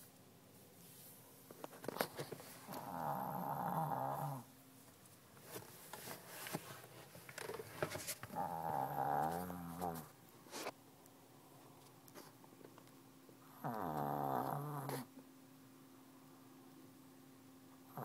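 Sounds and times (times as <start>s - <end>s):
dog snoring: 2.7s - 4.5s, 8.3s - 10.1s, 13.4s - 15.1s.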